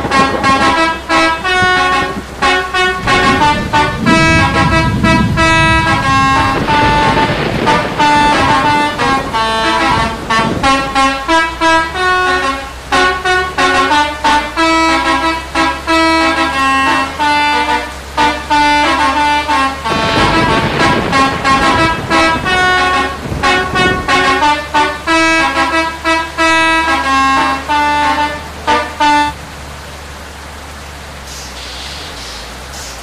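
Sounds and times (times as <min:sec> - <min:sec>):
low rumble: 0:00.0 - 0:14.3, 0:19.8 - 0:25.1
musical bus air horns: 0:00.0 - 0:29.4
rain hissing: 0:00.0 - 0:33.0.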